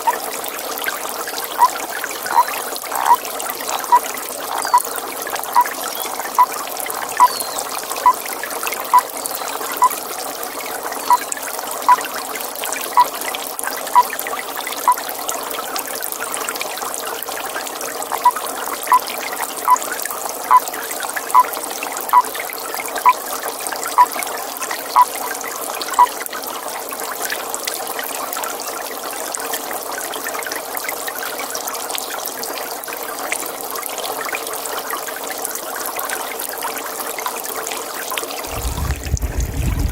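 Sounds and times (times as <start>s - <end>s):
trickling water: 0.0s - 39.9s
toad calling: 1.6s - 8.2s, 8.9s - 9.1s, 9.7s - 10.0s, 11.0s - 11.3s, 18.2s - 19.1s, 20.5s - 20.7s, 21.3s - 21.5s.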